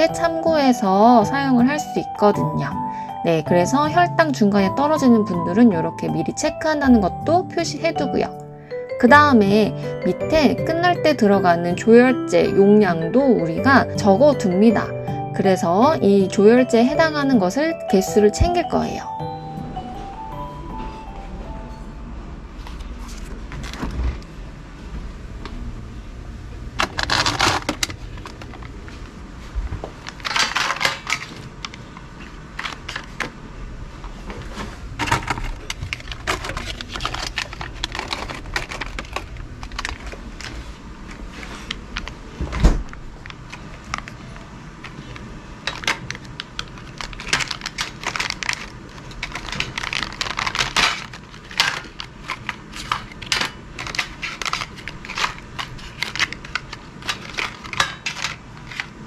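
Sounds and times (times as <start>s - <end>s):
packaging rustling and crinkling: 26.9s - 33.3s, 34.1s - 59.0s.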